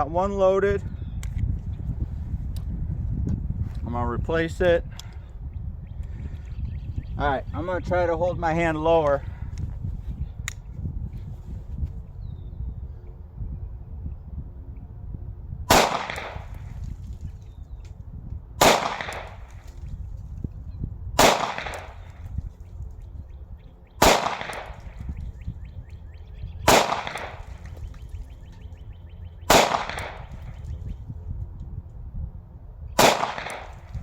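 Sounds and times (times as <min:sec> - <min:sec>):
steady low rumble: 0:00.0 - 0:34.0
pistol shots: 0:15.7 - 0:16.6, 0:18.6 - 0:19.6, 0:21.2 - 0:22.2, 0:24.0 - 0:25.1, 0:26.7 - 0:27.6, 0:29.4 - 0:30.5, 0:33.0 - 0:34.0.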